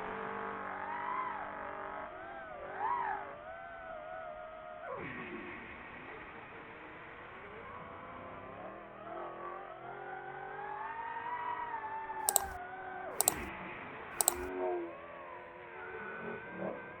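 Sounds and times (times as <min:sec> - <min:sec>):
sharp clicks: 0:12.3 - 0:12.6, 0:13.2 - 0:13.5, 0:14.2 - 0:14.5.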